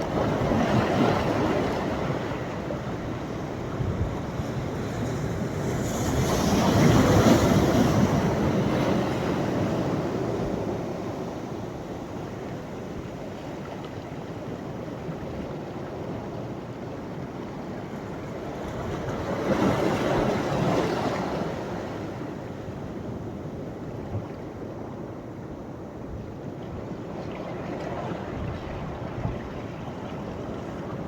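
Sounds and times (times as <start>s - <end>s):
sea waves breaking on beach: 0.0s - 16.3s.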